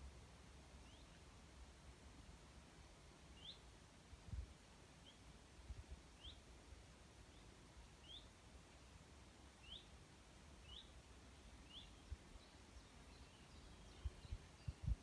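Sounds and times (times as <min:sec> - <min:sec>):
forest ambience: 0:00.0 - 0:15.0
bird chirps: 0:00.8 - 0:01.2, 0:03.4 - 0:03.6, 0:06.2 - 0:06.4, 0:07.3 - 0:08.3, 0:09.6 - 0:09.9, 0:10.6 - 0:11.0, 0:11.6 - 0:15.0.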